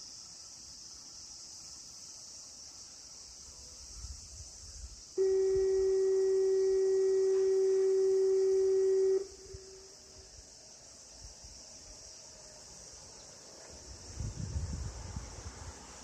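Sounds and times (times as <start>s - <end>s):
crickets chirping: 0.0s - 16.0s
steady electronic loudspeaker tone: 5.2s - 9.7s.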